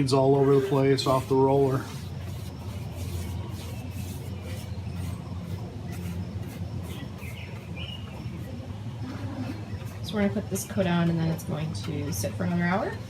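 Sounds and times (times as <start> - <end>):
low outdoor hum: 0.0 - 13.0
bird chirping: 0.2 - 11.1
faint scratchy strokes: 0.3 - 10.3.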